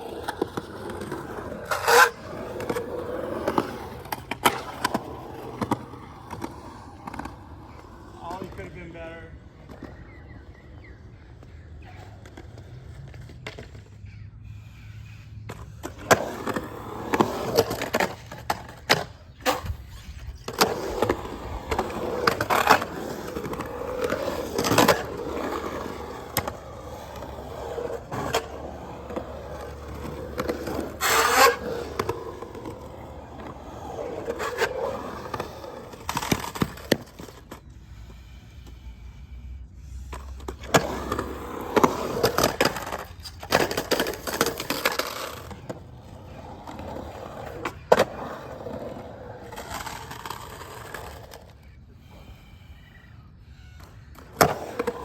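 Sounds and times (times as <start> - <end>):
skateboard wheels rolling on concrete: 0.0 - 55.0
skateboard clacking on ground: 15.5 - 37.6.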